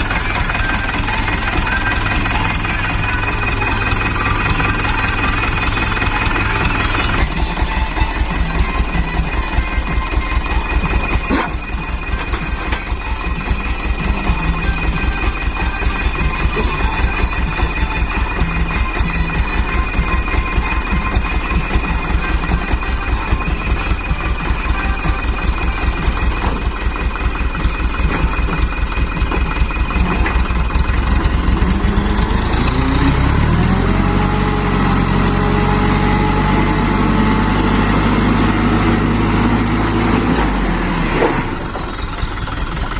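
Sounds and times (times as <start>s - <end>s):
diesel engine revving: 0.0s - 42.9s
diesel truck engine idling: 0.0s - 42.9s.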